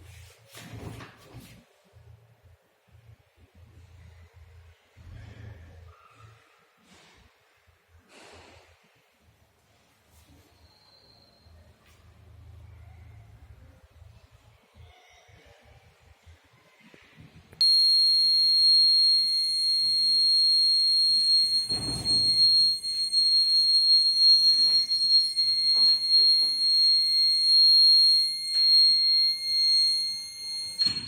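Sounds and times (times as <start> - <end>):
high-pitched electronic alarm tone: 17.6 - 31.0.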